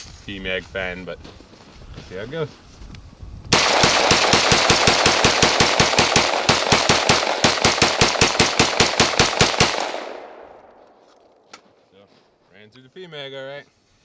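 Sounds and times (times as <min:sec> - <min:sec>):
rifle shots in rapid succession: 0:03.5 - 0:11.4.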